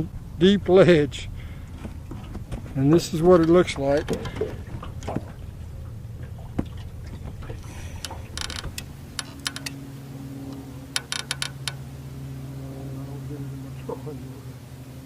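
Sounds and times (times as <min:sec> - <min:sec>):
boat motor humming: 0:00.0 - 0:15.0
steady low tone: 0:00.0 - 0:15.0
sharp clicks and ticks: 0:08.0 - 0:09.8.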